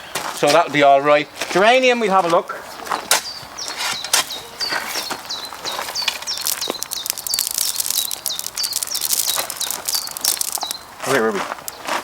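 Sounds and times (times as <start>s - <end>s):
small bird chirping: 2.8s - 11.9s
sharp clicks: 5.7s - 10.8s.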